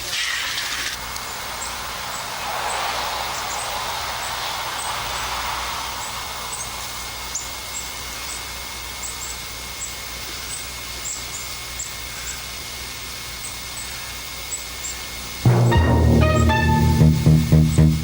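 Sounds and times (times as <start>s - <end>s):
faint steady hum: 0.9s - 18.0s
high-pitched chirps: 15.5s - 18.0s
loud music with bass: 15.5s - 18.0s.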